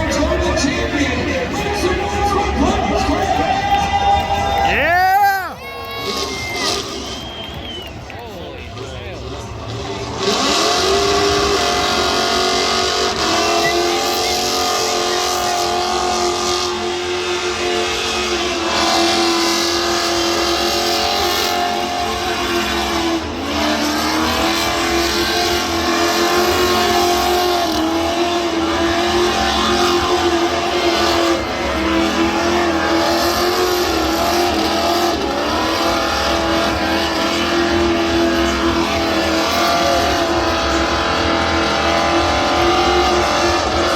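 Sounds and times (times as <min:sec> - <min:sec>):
car engine at high revs: 0:00.0 - 0:43.9.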